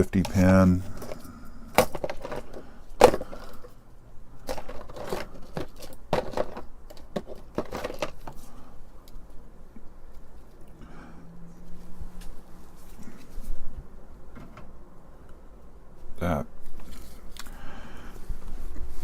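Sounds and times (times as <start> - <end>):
plastic connectors clacking: 0.0 - 3.7, 4.4 - 9.2
cables rustling: 0.0 - 10.9.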